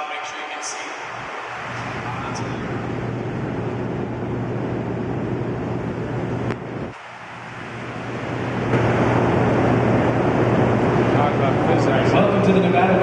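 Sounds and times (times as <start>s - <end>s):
generators humming and rumbling: 0.0s - 13.0s
click: 6.4s - 6.6s.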